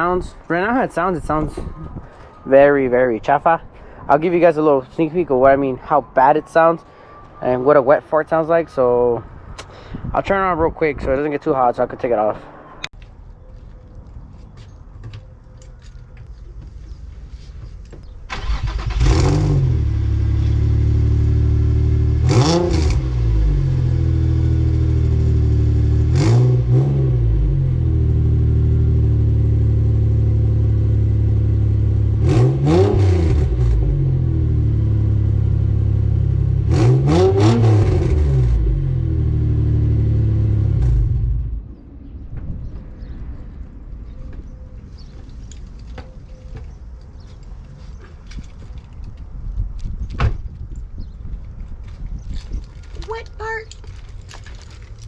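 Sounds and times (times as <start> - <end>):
car engine starting: 18.3 - 41.7.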